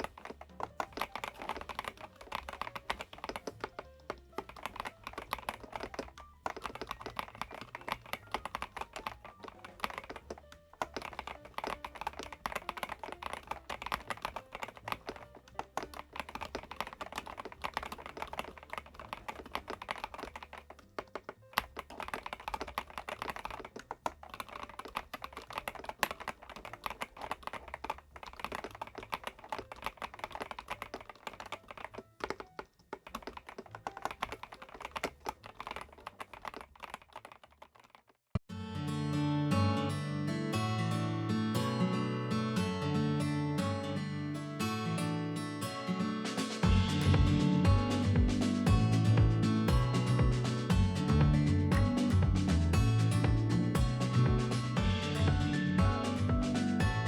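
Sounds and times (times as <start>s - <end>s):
background music: 0.0s - 27.4s, 38.5s - 57.0s
mechanical keyboard typing: 0.0s - 38.2s.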